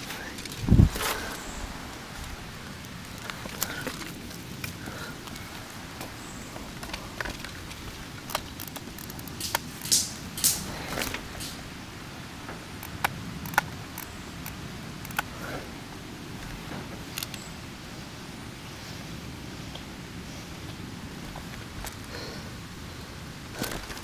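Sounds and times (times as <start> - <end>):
twigs and leaves snapping underfoot: 0.0 - 1.5, 2.1 - 11.6, 20.6 - 22.2, 23.5 - 24.0
brush crackling and rustling: 0.0 - 15.2, 23.3 - 24.0.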